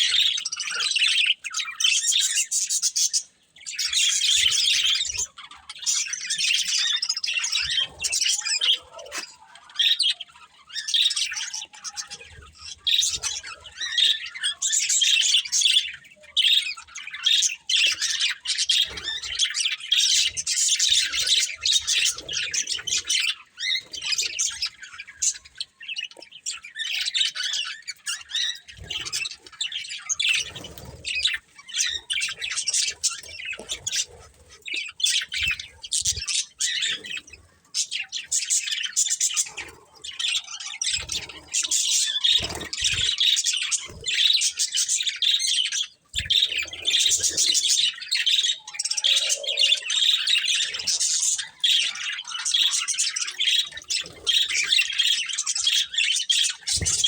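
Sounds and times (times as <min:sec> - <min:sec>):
bird squawks: 0:00.0 - 0:57.0
budgerigars chattering and warbling: 0:00.0 - 0:57.0.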